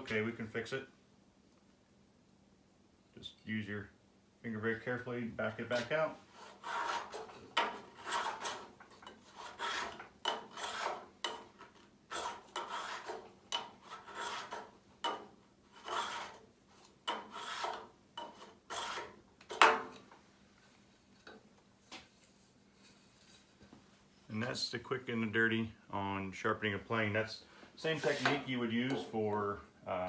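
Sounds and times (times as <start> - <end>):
hand plane rasping across wood: 6.4 - 16.4, 17.1 - 19.2.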